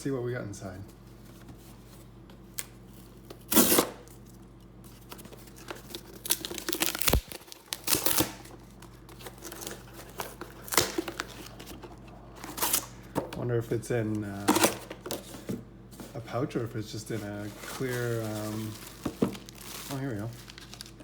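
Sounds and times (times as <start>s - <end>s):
packaging tearing and crinkling: 3.4s - 4.2s, 5.0s - 13.0s, 17.4s - 21.0s.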